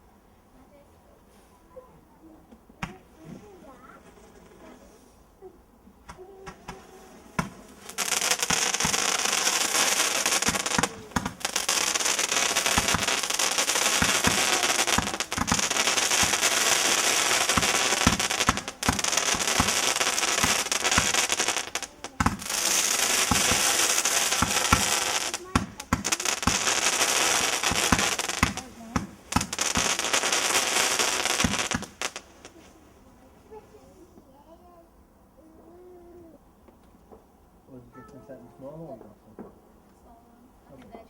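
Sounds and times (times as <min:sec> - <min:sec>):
fireworks crackling and popping: 0:02.8 - 0:05.1, 0:06.0 - 0:33.6.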